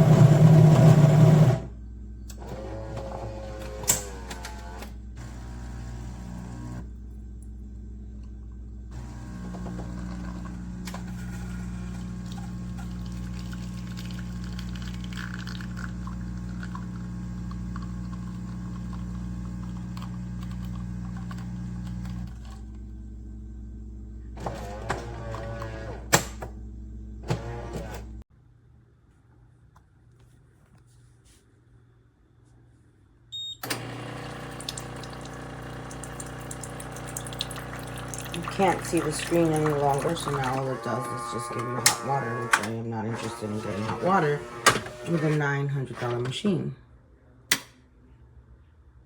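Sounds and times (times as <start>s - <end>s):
espresso machine humming: 0.0s - 1.6s, 2.6s - 28.2s, 33.7s - 45.6s.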